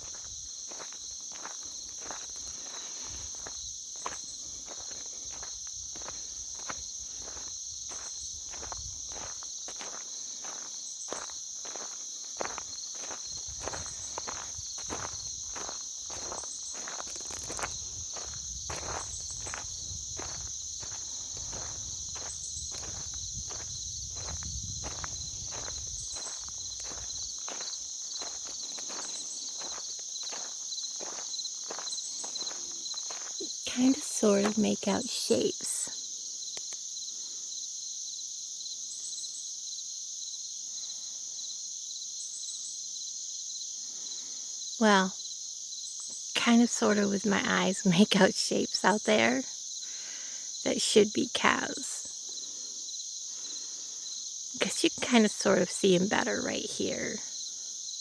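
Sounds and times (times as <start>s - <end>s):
footsteps on road: 0.0s - 34.6s
crickets trilling: 0.0s - 58.0s
insects chirring: 0.0s - 58.0s.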